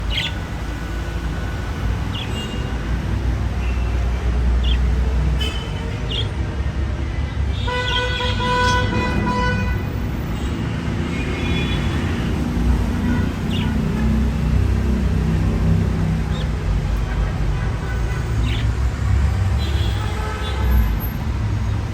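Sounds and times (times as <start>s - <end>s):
budgerigars chirping: 0.0s - 0.5s, 2.1s - 2.8s, 4.6s - 6.4s, 13.1s - 14.1s, 16.1s - 17.1s, 18.4s - 18.8s.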